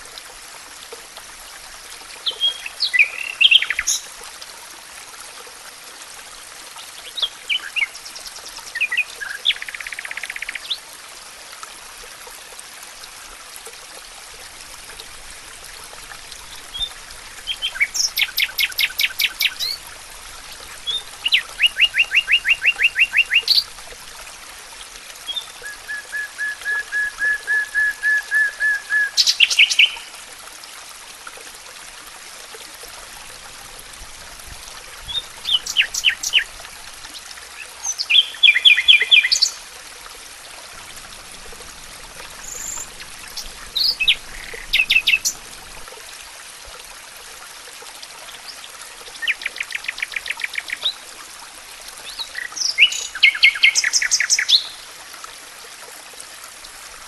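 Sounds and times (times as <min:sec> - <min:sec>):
birds singing trilled songs: 0:02.2 - 0:04.1, 0:16.5 - 0:19.8, 0:35.0 - 0:36.5, 0:37.6 - 0:39.6, 0:42.4 - 0:45.4, 0:49.2 - 0:51.0, 0:52.0 - 0:54.8
steady faint hiss: 0:32.8 - 0:46.8.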